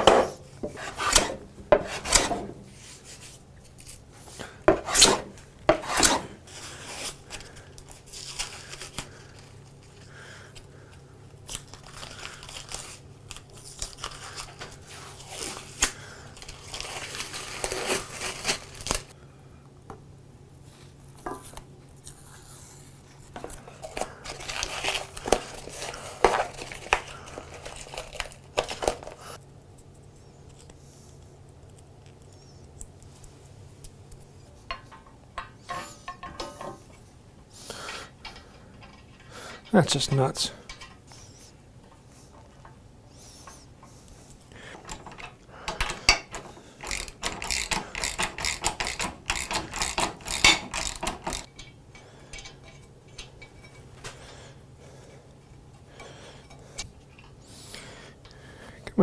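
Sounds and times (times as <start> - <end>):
scraping and rubbing: 0.0 - 4.0, 4.7 - 7.4.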